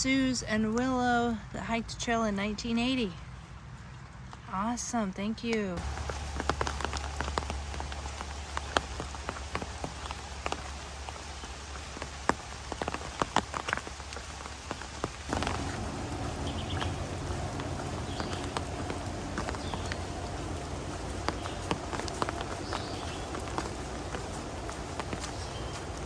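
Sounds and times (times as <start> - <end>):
rain falling: 5.8 - 26.0
steady low noise: 15.2 - 26.0.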